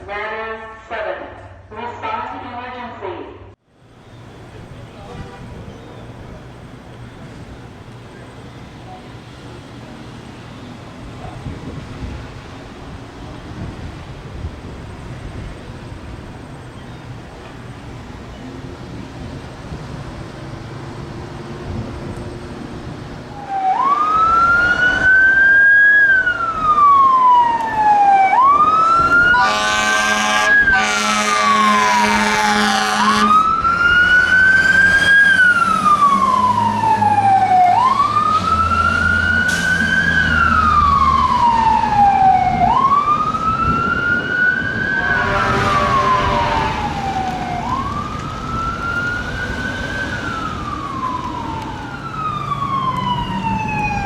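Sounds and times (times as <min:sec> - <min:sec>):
fire truck siren wailing: 0:03.8 - 0:54.0
air horn blast: 0:05.0 - 0:05.8, 0:28.9 - 0:33.5, 0:44.8 - 0:47.4.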